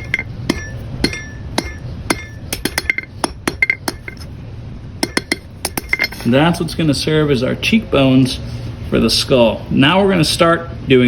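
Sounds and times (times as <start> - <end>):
hammer striking steel on anvil: 0.0 - 4.3, 5.0 - 6.3
metallic ring: 0.0 - 4.4, 5.0 - 6.4.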